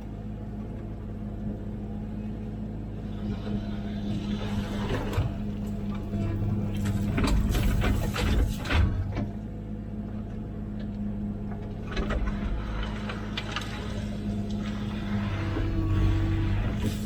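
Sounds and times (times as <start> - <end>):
mini excavator diesel engine running: 0.0 - 17.0
metal clanks and scrapes: 4.0 - 9.2.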